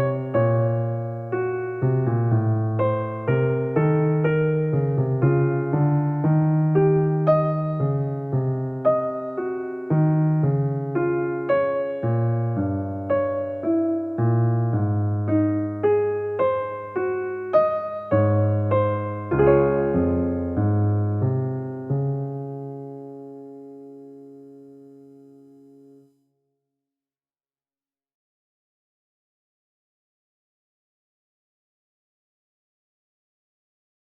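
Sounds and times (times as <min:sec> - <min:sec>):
gentle electric piano music: 0:00.0 - 0:26.2.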